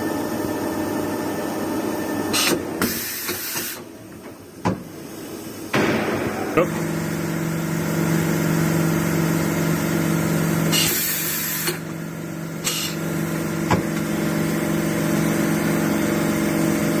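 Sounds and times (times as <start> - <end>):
machine humming: 5.6 - 10.8.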